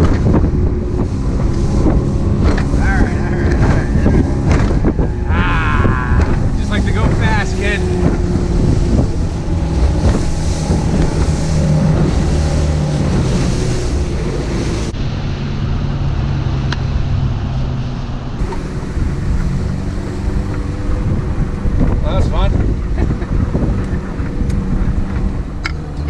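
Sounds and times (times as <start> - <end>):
outboard motor running: 0.0 - 15.0, 18.4 - 26.0
waves slapping against hull: 0.0 - 15.9, 18.4 - 26.0
wind buffeting microphone: 0.0 - 26.0.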